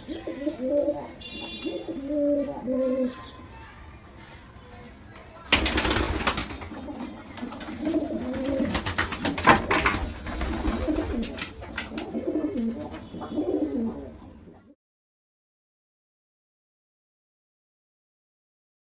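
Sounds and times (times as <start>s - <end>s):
baby pigeon cooing: 0.0s - 3.3s, 6.8s - 14.8s
clicks and rustles: 11.1s - 13.2s.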